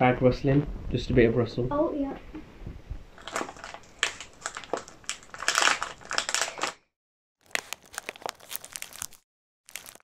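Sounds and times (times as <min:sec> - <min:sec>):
crisp packet crackling: 0:03.2 - 0:06.8, 0:07.4 - 0:10.0.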